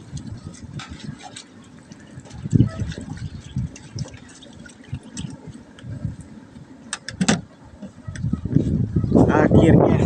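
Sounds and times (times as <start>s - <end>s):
water splashing on hands: 0.0s - 5.6s.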